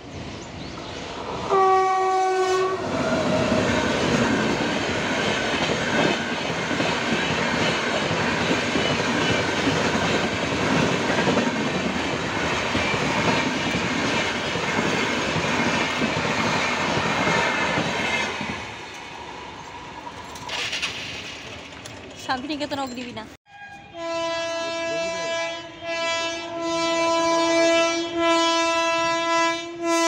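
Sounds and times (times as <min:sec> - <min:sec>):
train coaches rattling on track: 0:00.0 - 0:25.1
train horn: 0:01.4 - 0:04.2, 0:23.5 - 0:30.0.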